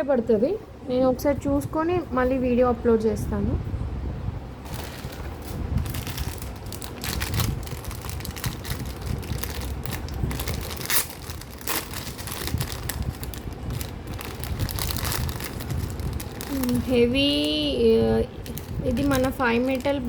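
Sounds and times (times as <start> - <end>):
packaging crinkling and rustling: 4.6 - 17.6, 18.3 - 20.0.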